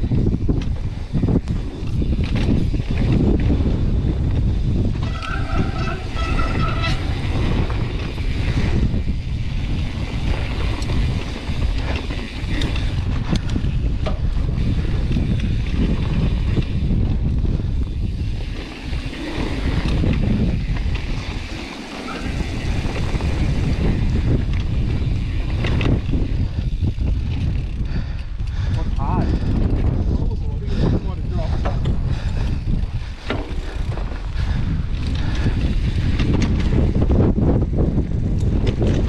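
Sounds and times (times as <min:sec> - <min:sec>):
bike rattling over rough ground: 0:00.0 - 0:39.0
wind buffeting microphone: 0:00.0 - 0:39.0
high squeal: 0:05.0 - 0:07.2.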